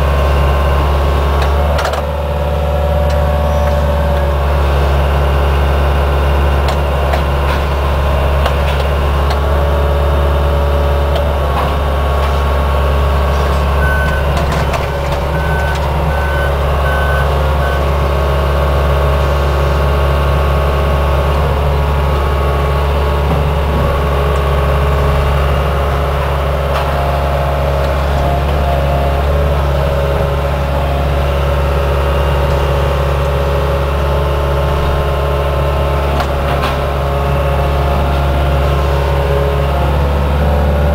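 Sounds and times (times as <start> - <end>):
excavator diesel engine droning: 0.0 - 40.9
high alarm beeps: 13.8 - 14.3, 15.3 - 17.8.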